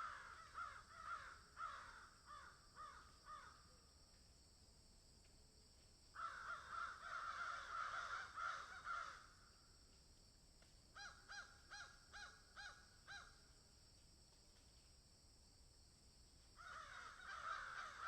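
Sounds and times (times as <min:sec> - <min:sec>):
crows cawing: 0:00.0 - 0:03.6, 0:06.2 - 0:09.4, 0:11.0 - 0:13.4, 0:16.6 - 0:18.0.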